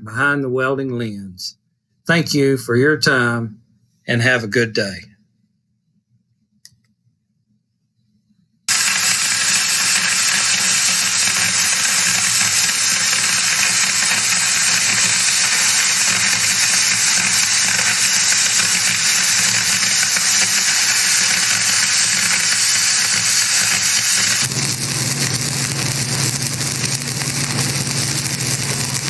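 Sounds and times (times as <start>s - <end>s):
welding arc crackling hiss: 8.7s - 29.0s.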